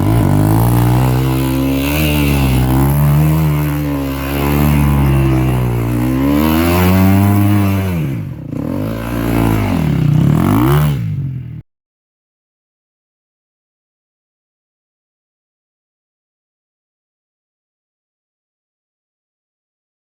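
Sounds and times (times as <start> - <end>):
motorcycle engine revving: 0.0 - 11.6.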